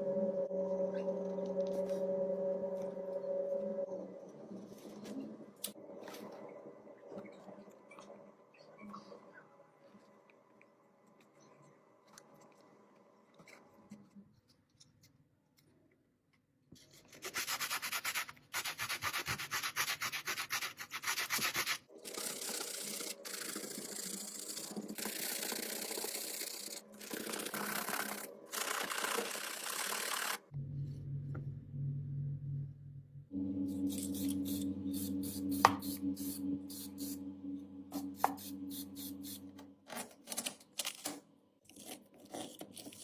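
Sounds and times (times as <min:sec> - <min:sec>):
low steady hum: 0:00.0 - 0:12.6, 0:30.5 - 0:40.0.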